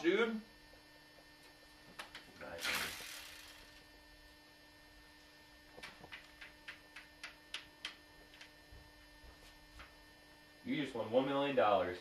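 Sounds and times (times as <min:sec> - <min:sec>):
electrical hum: 0:00.0 - 0:12.0.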